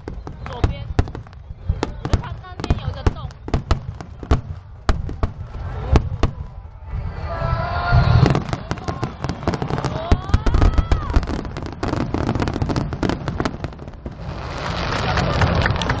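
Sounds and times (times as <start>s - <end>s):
whistling firework shells: 0.0s - 6.5s
fireworks bangs and crackles: 0.0s - 16.0s.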